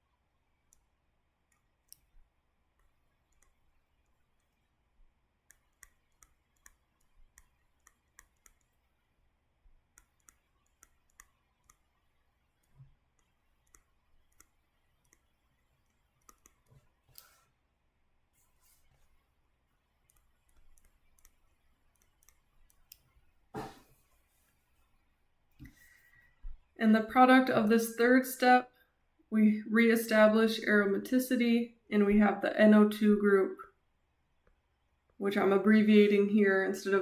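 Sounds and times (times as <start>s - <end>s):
faint irregular clicks: 0.6s - 17.4s, 18.4s - 23.3s.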